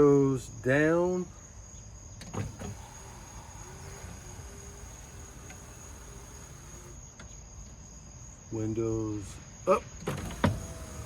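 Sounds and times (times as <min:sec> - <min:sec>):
crickets chirping: 0:00.0 - 0:11.0
window motor humming: 0:02.2 - 0:07.3, 0:10.0 - 0:11.0.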